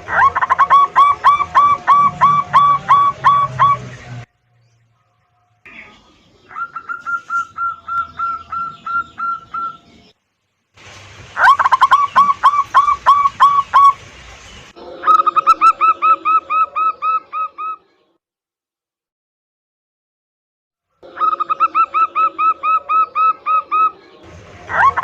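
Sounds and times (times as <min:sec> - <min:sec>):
doves cooing: 0:00.0 - 0:04.3, 0:05.7 - 0:10.1, 0:11.3 - 0:14.0, 0:14.9 - 0:17.8, 0:21.0 - 0:25.0.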